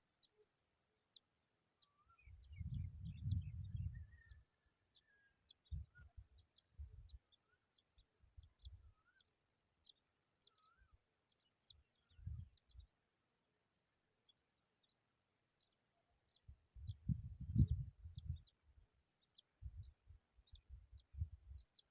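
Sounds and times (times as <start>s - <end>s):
bird chirps: 1.8s - 12.9s.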